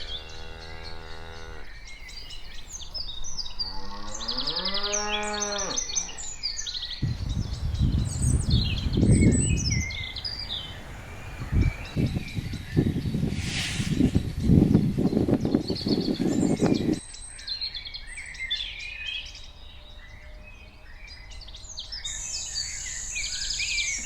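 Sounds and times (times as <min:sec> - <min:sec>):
cow mooing: 0:00.0 - 0:01.7, 0:03.7 - 0:06.2
birds chirping: 0:00.0 - 0:24.0
low rumbling noise: 0:07.0 - 0:17.0.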